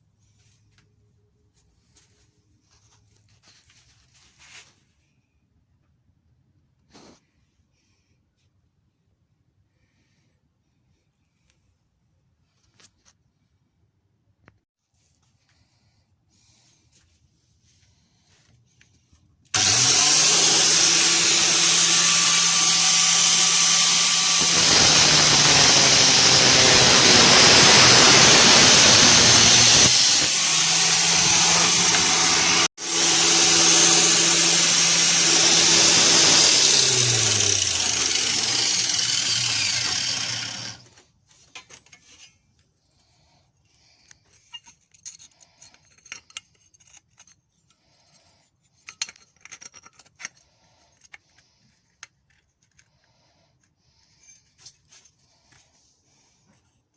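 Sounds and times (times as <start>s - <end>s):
angle grinder whining: 19.6s - 41.0s
grinder rasping into material: 19.6s - 41.0s.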